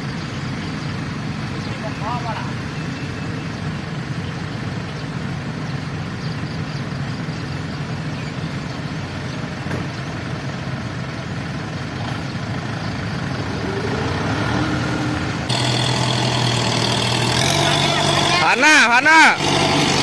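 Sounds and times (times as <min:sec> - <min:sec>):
road noise: 0:00.0 - 0:20.0
truck engine running: 0:00.0 - 0:20.0.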